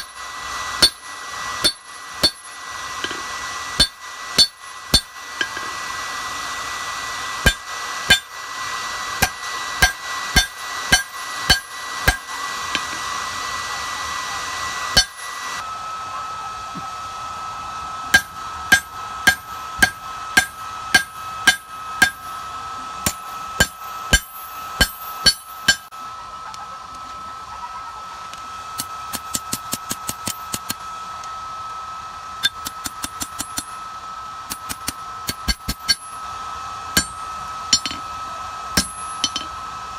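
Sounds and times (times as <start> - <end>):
hammer ringing on anvil: 0.8 - 3.2, 3.8 - 5.7, 7.4 - 8.3, 9.2 - 12.3, 15.0 - 15.2, 18.2 - 22.3, 23.0 - 25.9, 34.5 - 36.2, 37.0 - 38.1, 38.8 - 39.6.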